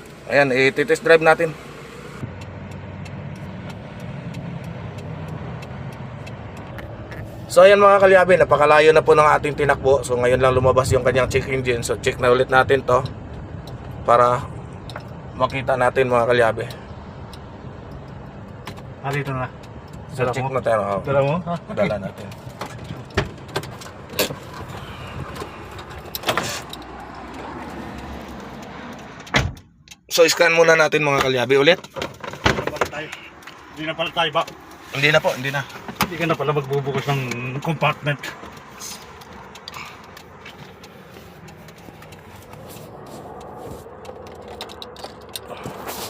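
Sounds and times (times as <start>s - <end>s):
car engine idling: 0.0s - 46.0s
car door clicks and knocks: 22.2s - 27.6s, 29.0s - 30.1s, 31.2s - 33.2s
small handling clicks: 35.6s - 45.6s.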